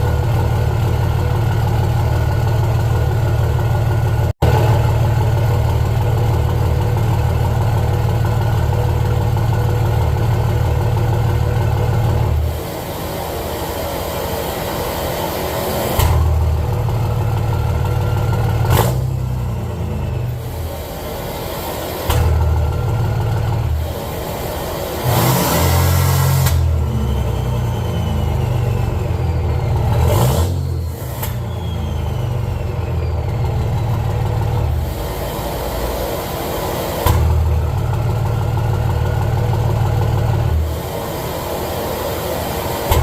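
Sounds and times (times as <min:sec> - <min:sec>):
diesel engine revving and idling: 0:00.0 - 0:43.0.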